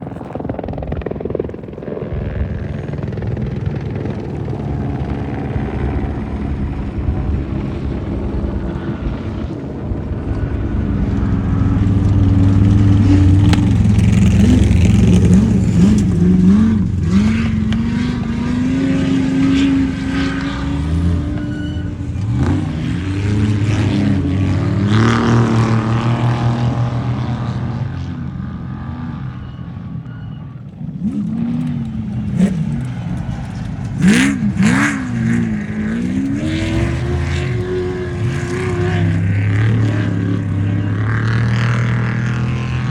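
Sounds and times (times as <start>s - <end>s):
truck engine revving: 0.0s - 29.7s, 30.9s - 42.9s.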